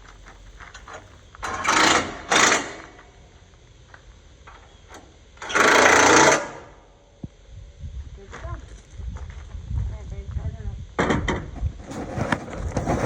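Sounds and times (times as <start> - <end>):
impact wrench bursts: 1.4 - 3.0, 5.4 - 6.8.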